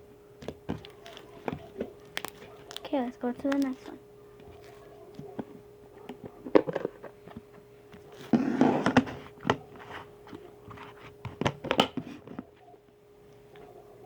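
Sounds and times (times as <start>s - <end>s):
faint steady hum: 0.0s - 14.0s
plastic containers knocking: 4.5s - 7.6s.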